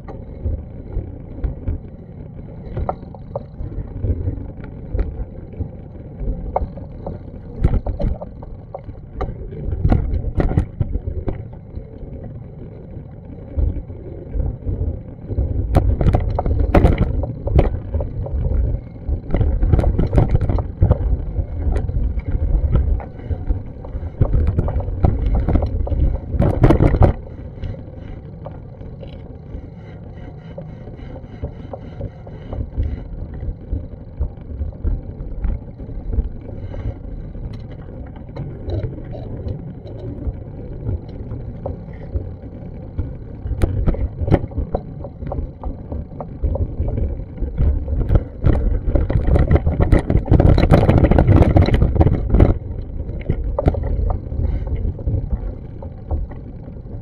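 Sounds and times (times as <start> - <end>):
wind rumble on microphone: 0.0 - 57.0
knocks and clicks: 22.6 - 27.3.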